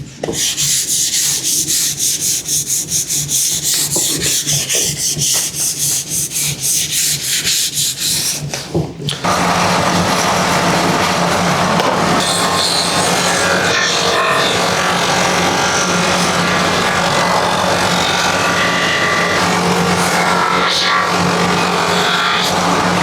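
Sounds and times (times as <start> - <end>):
woodworking machine grinding: 0.1 - 23.0.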